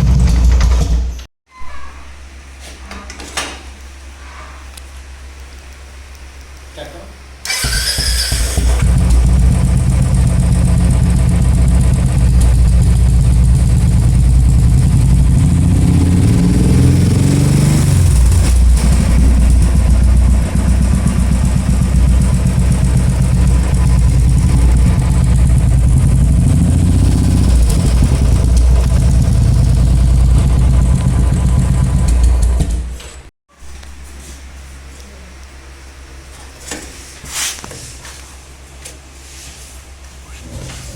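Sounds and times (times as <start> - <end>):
motorcycle engine idling and revving: 0.0 - 1.2, 7.5 - 33.3.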